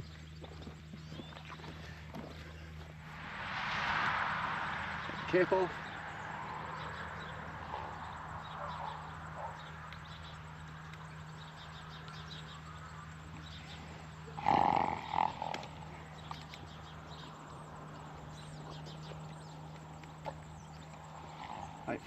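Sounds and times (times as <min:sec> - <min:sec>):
large farm animal calling: 0:12.4 - 0:16.3.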